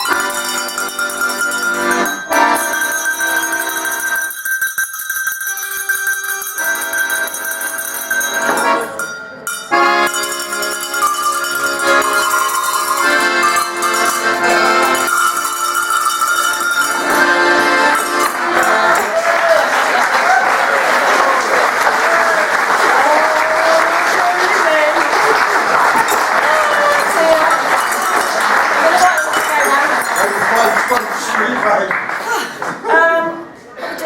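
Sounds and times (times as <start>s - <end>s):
tuned cowbells melody: 0.0s - 19.1s, 27.0s - 31.0s
accordion accompaniment: 0.0s - 31.6s.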